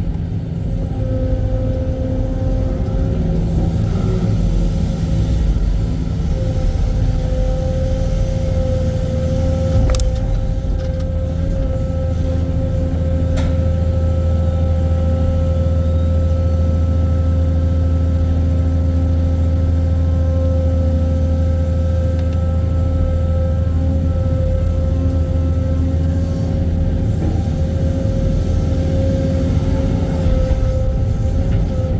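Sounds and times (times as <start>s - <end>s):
diesel engine rumbling: 0.0s - 31.9s.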